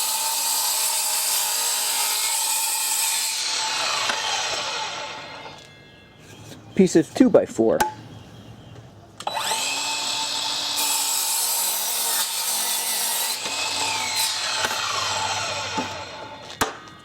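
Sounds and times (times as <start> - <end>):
saw blade cutting wood: 0.0 - 5.7, 9.2 - 16.8
miter saw motor whining: 9.2 - 10.8, 13.4 - 16.4.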